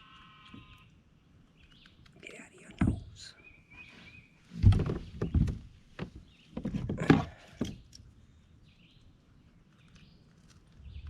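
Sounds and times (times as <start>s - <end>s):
knocks thumps and rustles: 4.5s - 7.8s.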